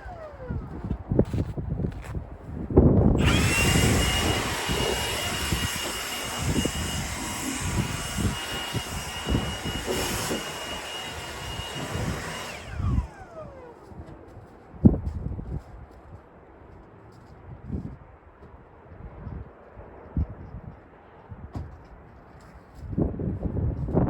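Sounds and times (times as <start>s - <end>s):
high-speed machine whining: 3.2s - 14.1s.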